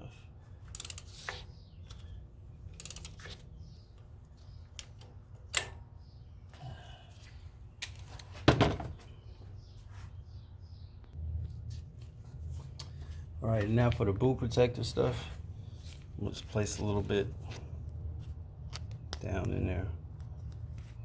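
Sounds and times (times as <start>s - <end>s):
metal tools clinking: 0.6s - 3.6s
ratchet wrench clicking: 0.7s - 1.2s, 2.7s - 3.3s.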